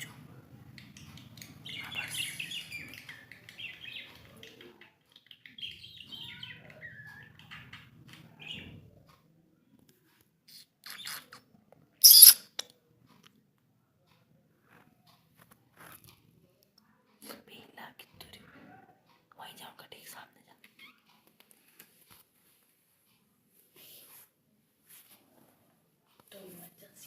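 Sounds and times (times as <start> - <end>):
budgerigars chirping and warbling: 1.1 - 4.7, 5.3 - 8.8.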